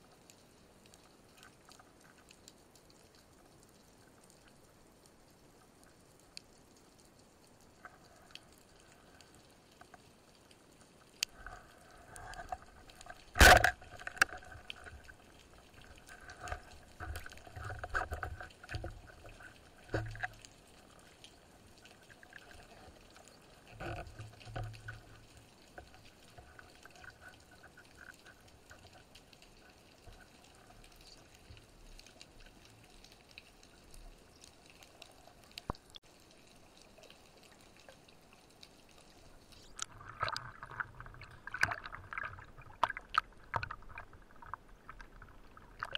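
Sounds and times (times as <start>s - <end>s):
underwater bubbling: 0.0s - 45.9s.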